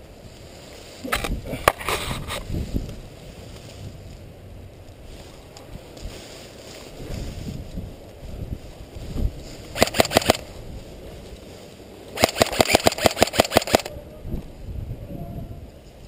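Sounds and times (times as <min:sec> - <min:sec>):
airsoft gun rapid shots: 0:09.8 - 0:10.4, 0:12.2 - 0:13.9.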